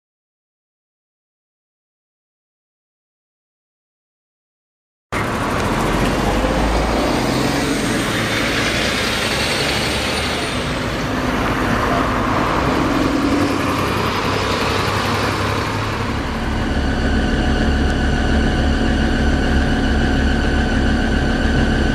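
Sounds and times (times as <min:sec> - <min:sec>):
road noise: 0:05.1 - 0:21.9
bus diesel engine: 0:05.2 - 0:21.9.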